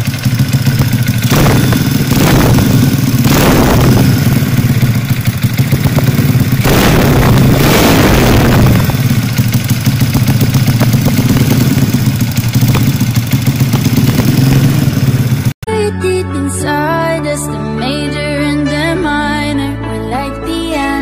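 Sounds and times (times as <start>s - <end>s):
motorcycle engine idling and revving: 0.0s - 15.6s.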